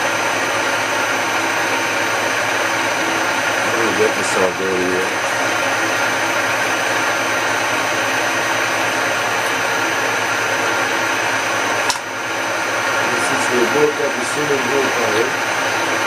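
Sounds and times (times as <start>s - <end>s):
machine whirring: 0.0s - 16.0s
sharp click: 11.9s - 12.1s.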